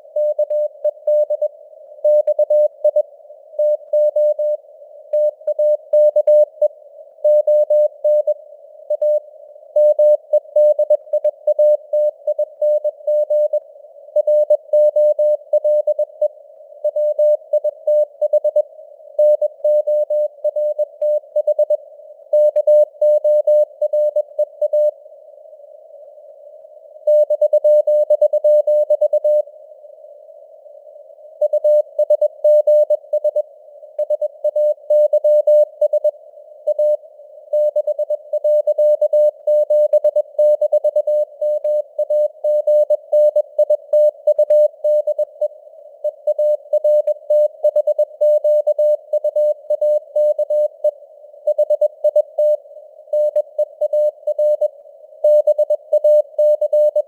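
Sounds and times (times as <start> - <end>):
morse code beeps: 37.6 - 45.4, 46.1 - 50.9, 53.2 - 57.0.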